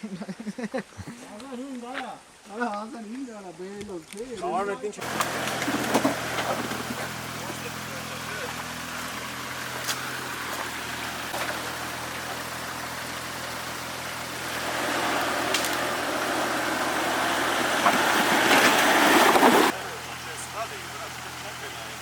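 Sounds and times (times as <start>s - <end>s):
off-road vehicle running: 5.0s - 22.0s.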